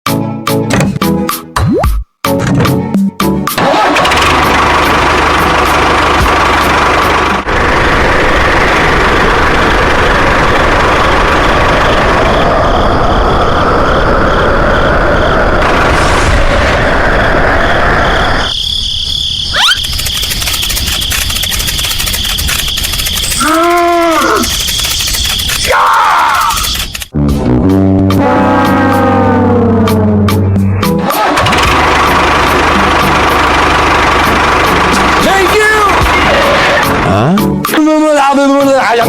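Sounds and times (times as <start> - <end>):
engine-like running noise: 3.6 - 18.5, 19.8 - 25.6, 28.2 - 37.4
rising squeal: 11.3 - 27.0.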